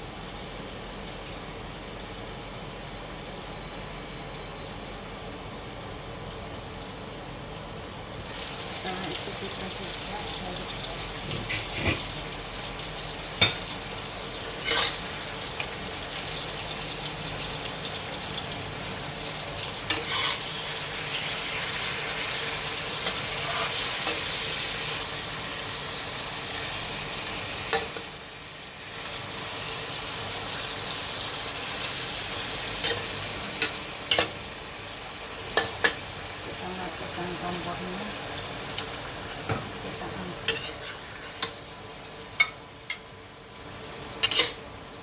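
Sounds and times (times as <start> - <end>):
food sizzling in a frying pan: 0.0 - 45.0.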